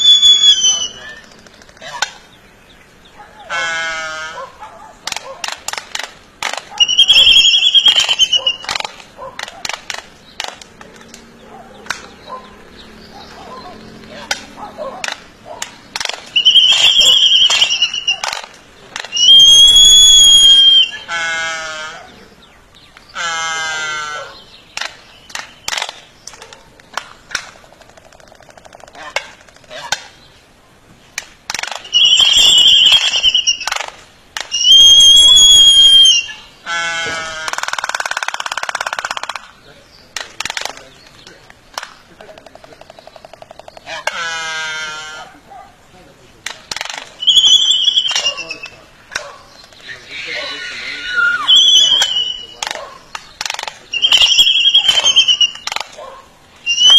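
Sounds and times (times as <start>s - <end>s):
sharp clicks: 0.0s - 2.4s, 5.0s - 12.3s, 13.2s - 21.0s, 24.7s - 30.3s, 31.2s - 36.3s, 37.4s - 44.2s, 46.4s - 50.0s, 51.4s - 56.1s
high-pitched bird calls: 0.0s - 5.6s, 6.5s - 30.4s, 31.6s - 45.4s, 46.7s - 56.9s
buzzy falling bird calls: 0.0s - 56.9s.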